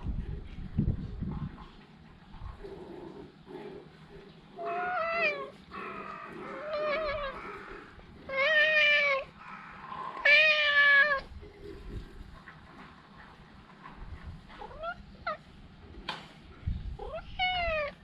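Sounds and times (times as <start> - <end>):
cat meowing: 4.6 - 9.4, 10.2 - 11.3, 17.0 - 18.0.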